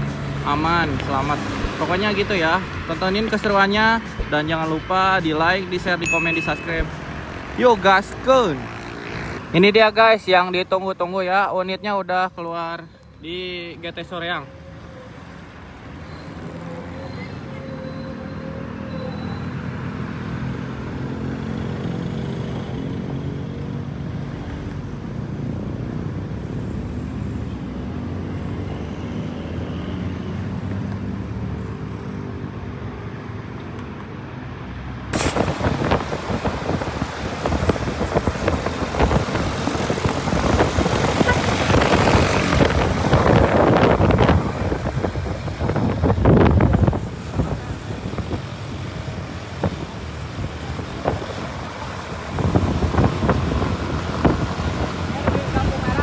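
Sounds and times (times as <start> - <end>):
wind buffeting microphone: 35.1 - 56.0.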